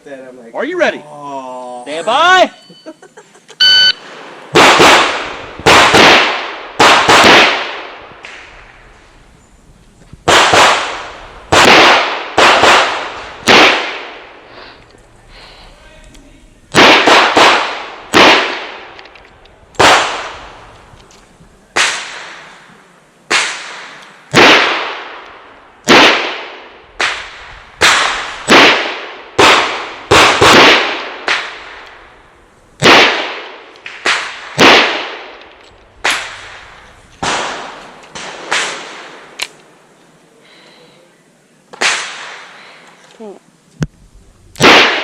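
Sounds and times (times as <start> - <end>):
loud revolver shots: 4.0 - 8.5, 10.2 - 14.4, 16.7 - 19.1, 19.8 - 20.6, 21.8 - 22.5, 23.3 - 31.9, 32.8 - 39.4, 41.7 - 42.5, 44.6 - 45.0.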